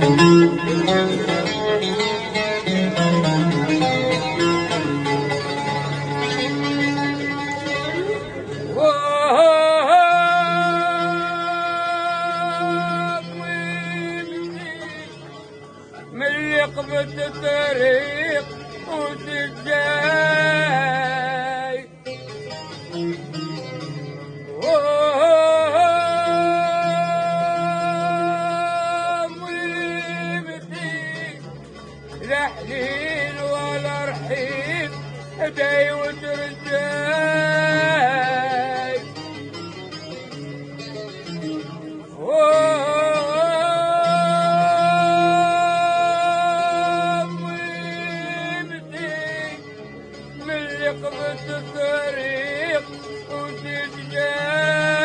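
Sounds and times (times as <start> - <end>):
person singing: 7.9 - 15.3, 24.6 - 31.5, 42.1 - 49.7
person singing ornamented phrases: 8.8 - 15.1.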